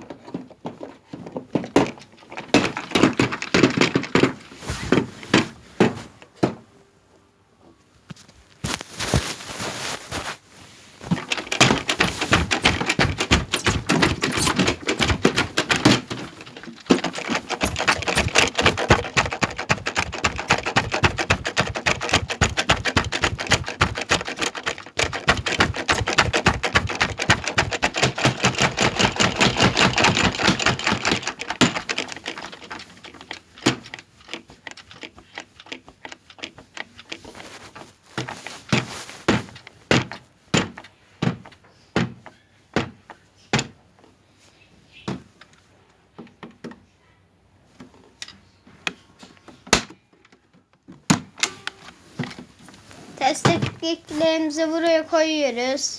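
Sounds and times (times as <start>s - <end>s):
washing machine rattling and knocking: 1.4s - 6.6s, 11.0s - 42.2s, 42.8s - 43.8s.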